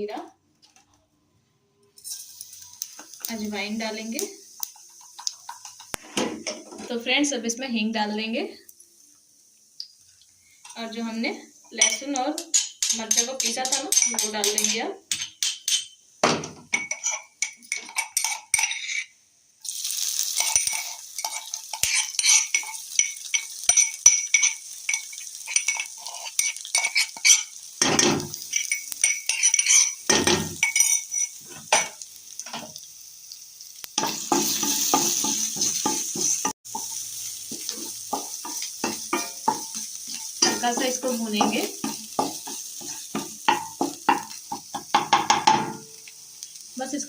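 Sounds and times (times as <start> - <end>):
garlic sizzling in hot oil: 2.0 - 47.0
spoon clinking and scraping: 11.8 - 16.0, 16.7 - 19.2, 20.3 - 32.6, 34.0 - 45.4
spatula scraping pan: 20.3 - 31.9, 34.0 - 45.4.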